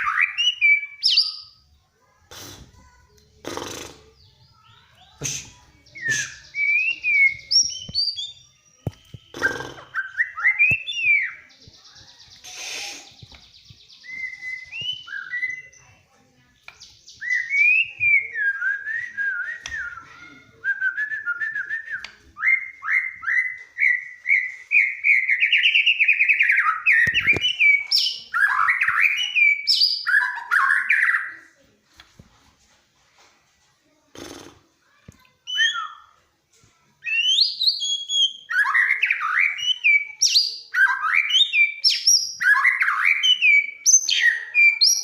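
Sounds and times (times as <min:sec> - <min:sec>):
bird singing whistled phrases: 0:00.0 - 0:01.6, 0:04.7 - 0:11.5, 0:12.5 - 0:15.8, 0:16.9 - 0:31.4, 0:35.5 - 0:36.2, 0:37.0 - 0:45.0.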